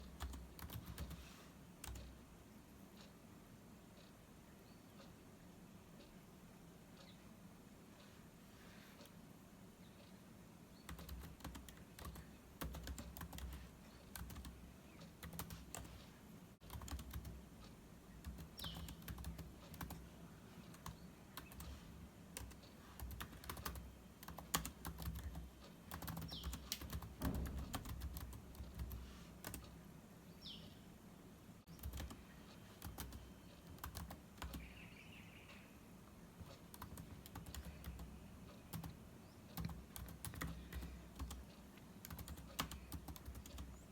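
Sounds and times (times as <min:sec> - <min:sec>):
keyboard typing: 0:00.0 - 0:02.2, 0:10.9 - 0:29.8, 0:31.7 - 0:34.8, 0:36.4 - 0:43.9
bird chirping: 0:06.9 - 0:07.4, 0:17.6 - 0:22.0, 0:25.3 - 0:26.8, 0:30.2 - 0:31.0, 0:34.4 - 0:36.2.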